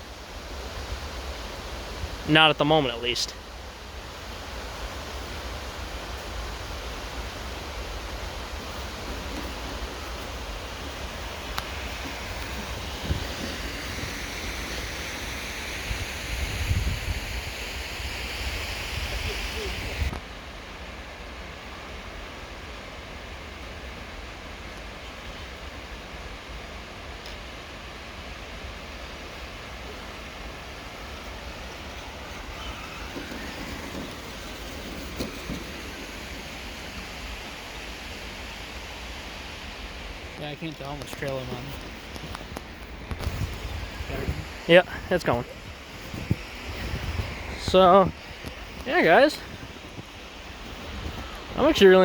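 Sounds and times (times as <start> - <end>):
wind buffeting the microphone: 4.6 - 20.2, 39.7 - 52.0.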